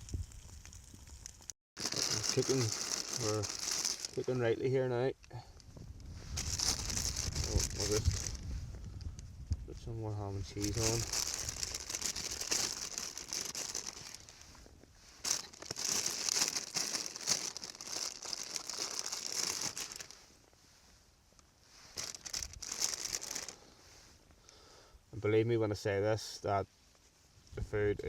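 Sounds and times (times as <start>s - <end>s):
plastic packaging crinkling: 0.2s - 4.6s, 5.6s - 8.5s, 10.4s - 14.6s, 15.2s - 20.2s, 21.8s - 23.6s.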